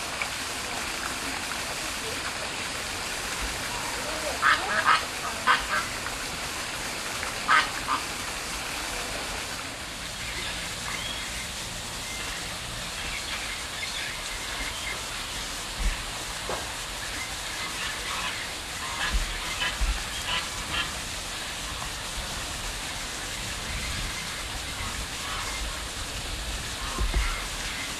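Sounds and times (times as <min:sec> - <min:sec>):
steady background hiss: 0:00.0 - 0:27.9
birds quacking: 0:03.7 - 0:06.0, 0:07.4 - 0:08.2, 0:10.0 - 0:22.1, 0:23.8 - 0:26.0, 0:26.6 - 0:27.9.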